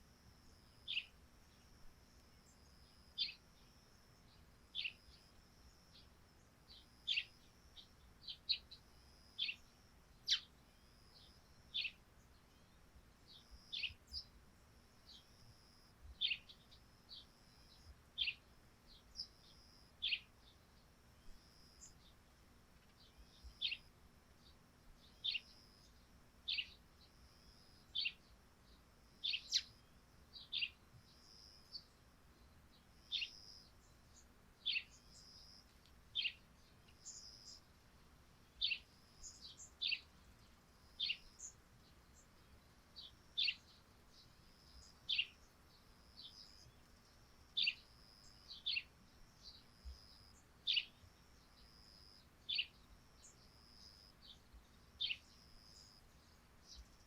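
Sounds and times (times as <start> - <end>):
faint steady high tone: 0.0 - 37.8
sparrows chirping: 0.4 - 37.8, 38.4 - 57.0.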